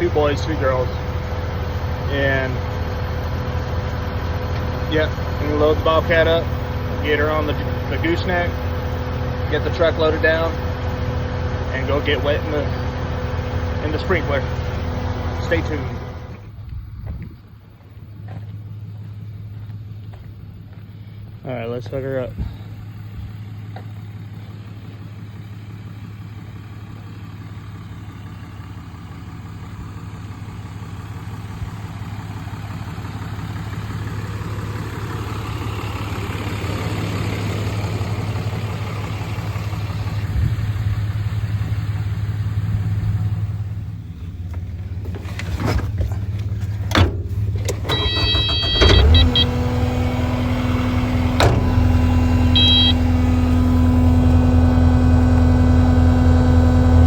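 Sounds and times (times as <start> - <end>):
vehicle engine running: 0.0 - 57.0
sharp clunks: 44.5 - 49.4, 51.2 - 52.9
short high beeps: 47.9 - 49.5, 52.5 - 53.0.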